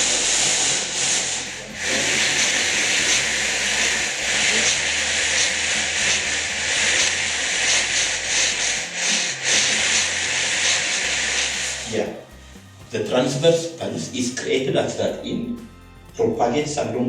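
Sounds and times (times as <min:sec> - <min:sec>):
slinky rubbing and scraping: 0:00.0 - 0:12.3.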